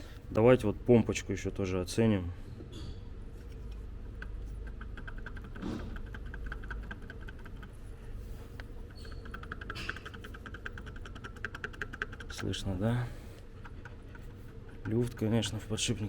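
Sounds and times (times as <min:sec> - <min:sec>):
pump bearing ticking: 0:04.1 - 0:07.9, 0:08.6 - 0:16.0.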